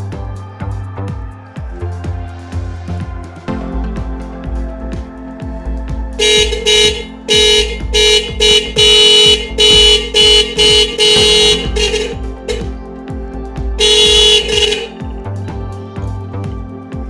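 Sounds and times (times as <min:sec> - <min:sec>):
steady low beat: 0:00.0 - 0:17.0
motorcycle horn toots: 0:06.2 - 0:12.7, 0:13.8 - 0:15.0.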